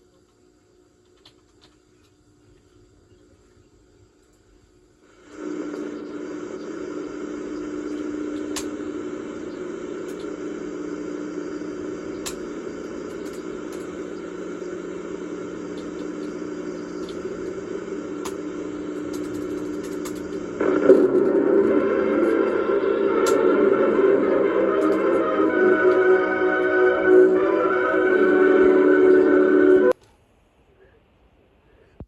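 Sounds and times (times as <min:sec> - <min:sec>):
buzzing hum with hiss: 0:00.0 - 0:31.0
faint clicks: 0:18.2 - 0:20.5.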